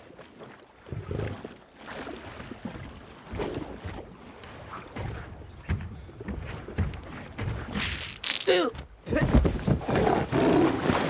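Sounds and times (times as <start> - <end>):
sea water splashing against boat: 0.4 - 8.3.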